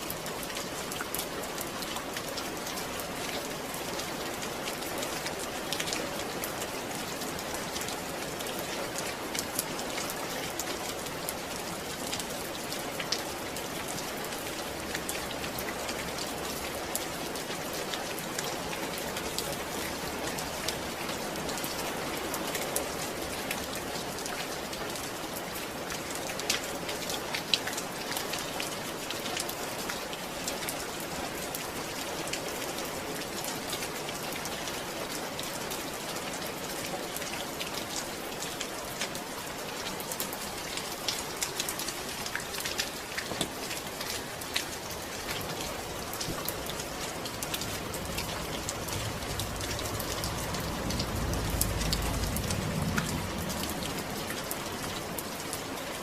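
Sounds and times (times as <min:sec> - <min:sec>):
rain pattering: 0:00.0 - 0:56.0
low rumble: 0:47.8 - 0:54.2.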